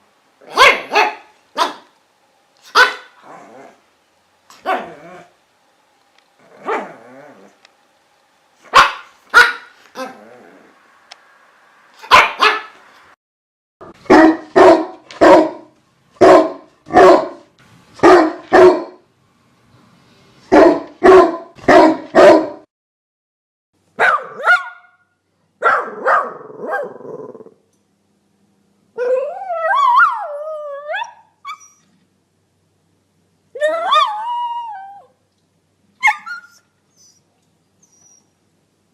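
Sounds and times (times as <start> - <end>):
dog barking: 0.4 - 1.9, 2.6 - 3.2, 4.6 - 4.9, 6.6 - 6.9, 8.7 - 10.1, 12.0 - 12.8, 14.0 - 19.0, 20.5 - 22.7, 24.0 - 27.0
dog yelping: 0.4 - 1.9, 2.6 - 3.5, 4.6 - 5.3, 6.5 - 7.6, 8.7 - 10.4, 12.0 - 12.8, 24.0 - 25.0, 25.6 - 27.2, 29.0 - 31.9, 33.6 - 35.1, 36.0 - 37.2, 37.8 - 38.3
dog whining: 6.4 - 7.6, 29.0 - 32.0, 33.6 - 35.1, 36.0 - 38.4.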